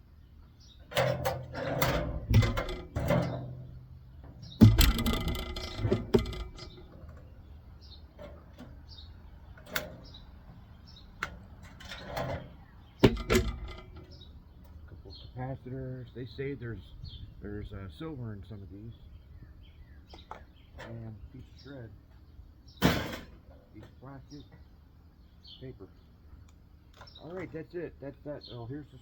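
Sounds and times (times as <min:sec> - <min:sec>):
metal parts knocking and clattering: 0:00.9 - 0:07.4, 0:11.6 - 0:14.2.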